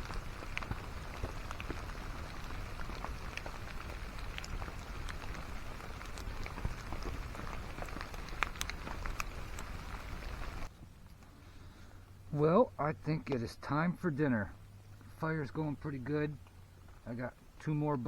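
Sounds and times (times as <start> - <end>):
drops ticking on a surface: 0.0 - 10.7
steady rain: 0.0 - 10.7.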